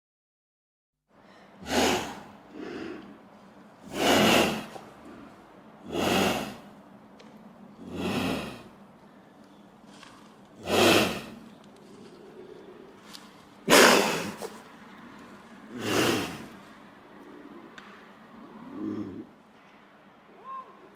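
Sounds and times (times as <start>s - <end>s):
lynx making breathy calls: 1.5s - 6.8s, 7.8s - 8.8s, 10.6s - 17.8s.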